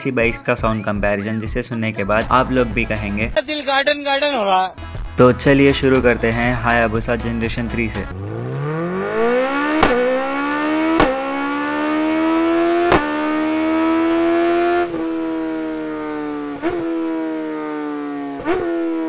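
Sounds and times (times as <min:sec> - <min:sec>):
motorcycle engine revving: 0:06.8 - 0:19.0.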